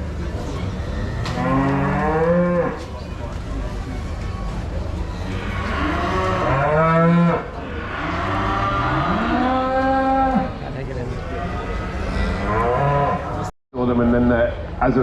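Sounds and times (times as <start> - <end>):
cattle mooing: 0.6 - 2.8, 5.4 - 10.5, 11.4 - 13.4.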